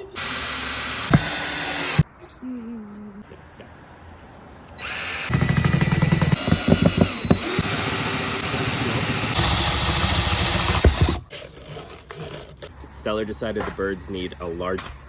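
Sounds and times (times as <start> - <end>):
power drill whining: 0.0 - 2.0, 4.8 - 11.3.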